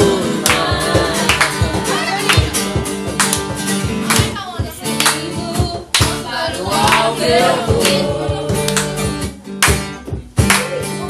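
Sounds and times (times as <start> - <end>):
voices singing: 0.0 - 9.4
cajon: 0.0 - 11.0
strummed acoustic guitar: 0.0 - 11.0.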